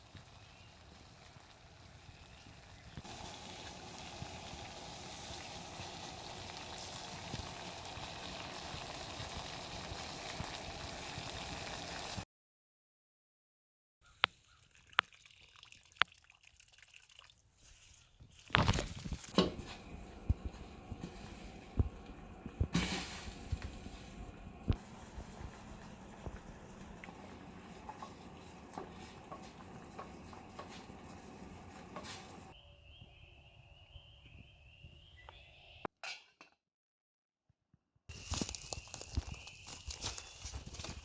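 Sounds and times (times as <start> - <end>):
water splashing and dripping: 14.5 - 17.6, 19.3 - 32.6.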